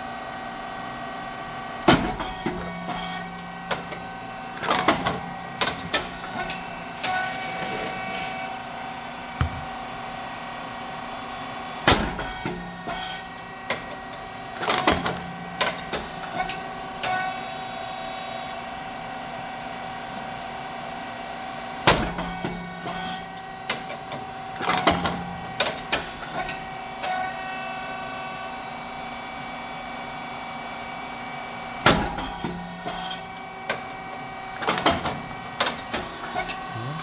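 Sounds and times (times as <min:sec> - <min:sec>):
machine motor humming: 0:36.6 - 0:37.0.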